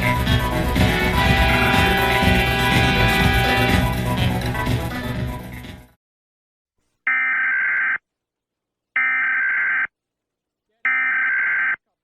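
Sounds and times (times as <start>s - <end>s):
music: 0.0s - 6.0s
emergency alert data tones: 10.9s - 11.8s.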